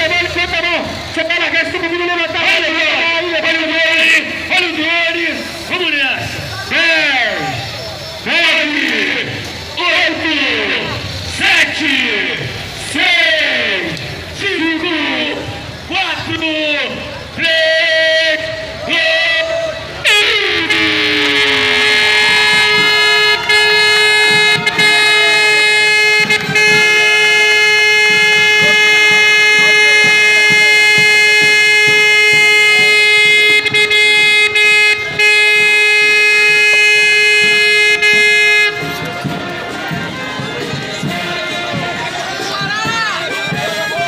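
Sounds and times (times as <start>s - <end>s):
air horn blast: 20.0s - 44.0s.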